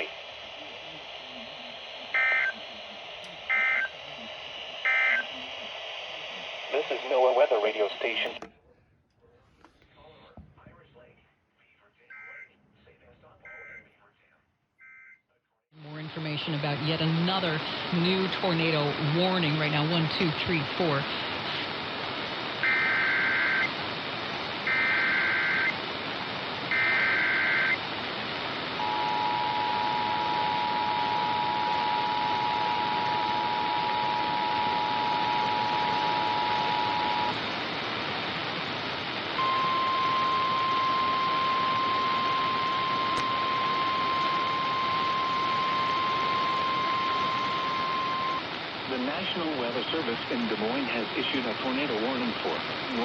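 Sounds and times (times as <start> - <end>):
radio hiss: 0.0 - 14.5, 15.8 - 53.0
single-tone warning alarm: 2.2 - 2.6, 3.5 - 4.0, 4.8 - 5.3, 12.1 - 12.5, 13.5 - 13.9, 14.8 - 15.2, 22.6 - 23.7, 24.7 - 25.7, 26.7 - 27.8, 28.8 - 37.4, 39.4 - 48.4
data tone bursts: 26.7 - 27.8, 28.8 - 37.4, 39.4 - 48.4
two-tone attention signal: 39.4 - 48.4.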